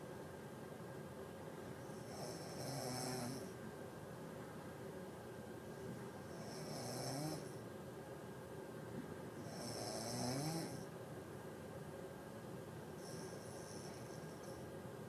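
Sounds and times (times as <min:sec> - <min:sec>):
person snoring: 0:02.0 - 0:03.5, 0:06.4 - 0:07.6, 0:09.4 - 0:10.9.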